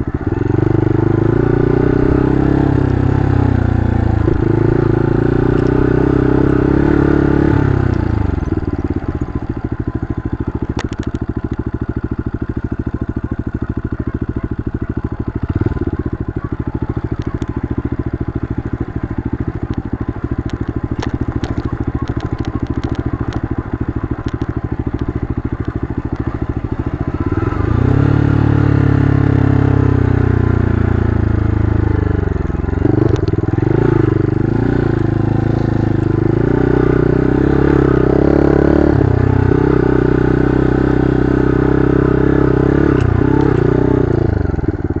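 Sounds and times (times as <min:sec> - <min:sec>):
motorcycle engine revving: 0:00.0 - 0:45.0
sharp clicks and clatter: 0:07.9 - 0:27.8, 0:32.4 - 0:33.9.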